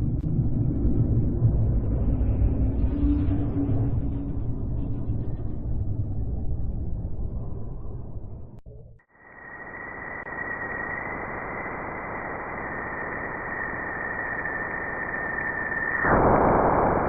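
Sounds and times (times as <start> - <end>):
static hiss: 9.2 - 17.0.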